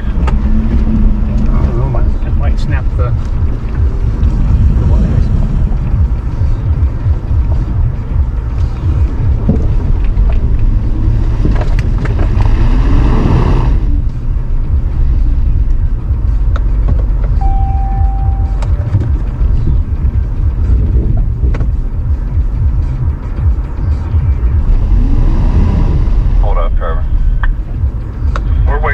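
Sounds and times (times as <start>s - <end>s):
engine and tyres rumbling: 0.0s - 28.9s
short steady beep: 17.4s - 18.9s.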